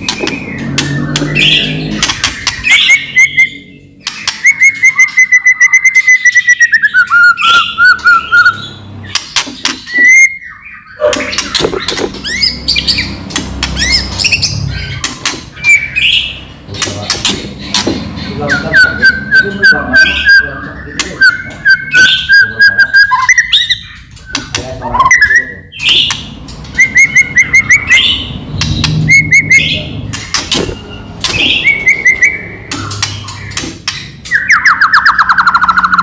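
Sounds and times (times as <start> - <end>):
bird singing with clicks and whistles: 0.0 - 36.0.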